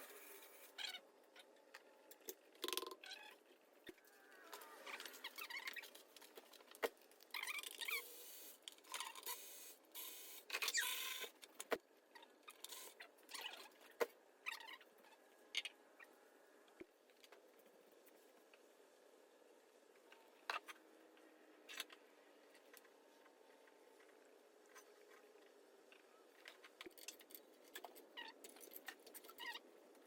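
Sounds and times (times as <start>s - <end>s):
tools and metal parts clinking: 26.4s - 29.5s.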